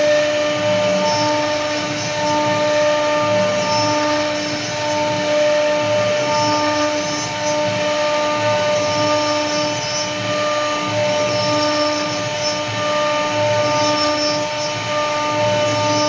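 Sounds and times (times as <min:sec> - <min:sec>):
router bit cutting wood: 0:00.0 - 0:16.0
router spindle whining: 0:00.0 - 0:16.0.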